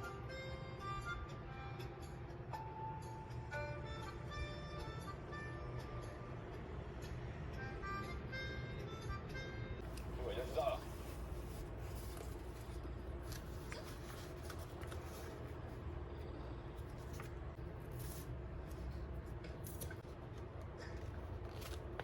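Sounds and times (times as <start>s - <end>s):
low steady hum: 0.0s - 22.0s
paper rustling: 9.9s - 15.8s, 16.8s - 19.0s, 21.0s - 22.0s.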